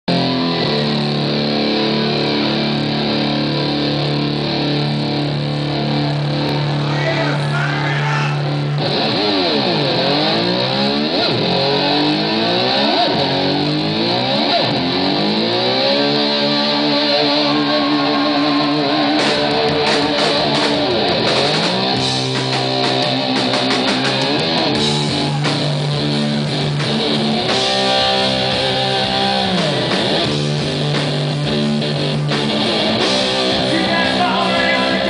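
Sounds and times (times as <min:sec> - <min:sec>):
electric slide guitar: 0:00.1 - 0:07.5, 0:08.4 - 0:35.0.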